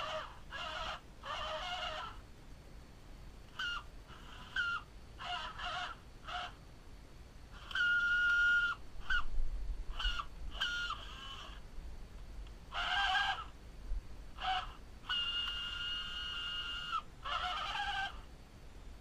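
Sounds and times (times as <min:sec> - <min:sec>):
bird squawking: 0:00.0 - 0:02.2, 0:03.5 - 0:06.6, 0:09.9 - 0:11.6, 0:12.7 - 0:13.5, 0:14.4 - 0:18.3.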